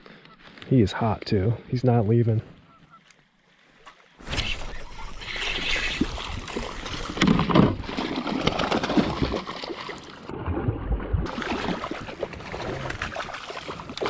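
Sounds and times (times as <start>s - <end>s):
water sloshing and splashing: 3.1s - 14.0s.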